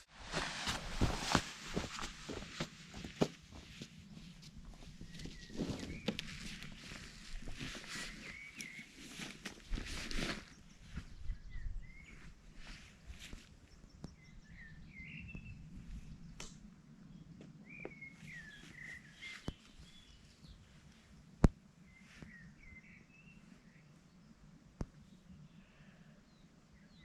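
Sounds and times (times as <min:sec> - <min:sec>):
rustling: 0:00.1 - 0:03.9, 0:04.7 - 0:10.5
birds chirping: 0:04.1 - 0:16.4, 0:17.1 - 0:24.4.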